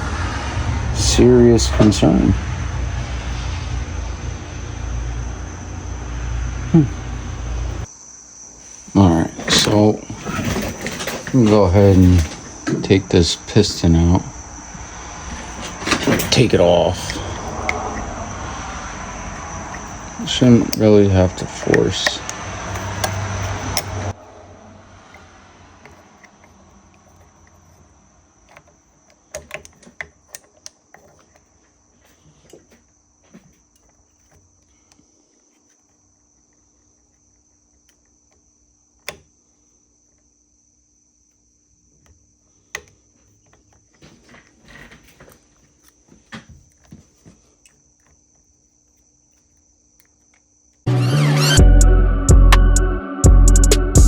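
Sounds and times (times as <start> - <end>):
metal tools clicking and tapping: 15.4 - 18.1, 19.2 - 24.2, 28.5 - 31.5.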